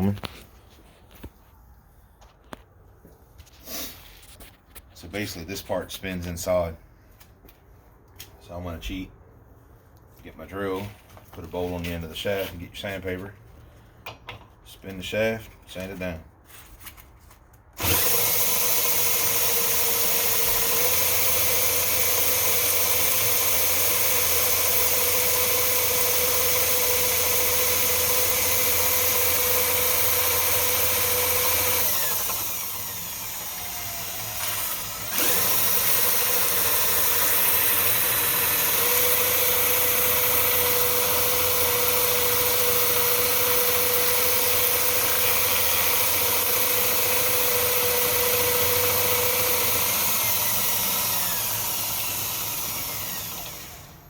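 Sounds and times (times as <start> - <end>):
electric drill whining: 17.8 - 54.0.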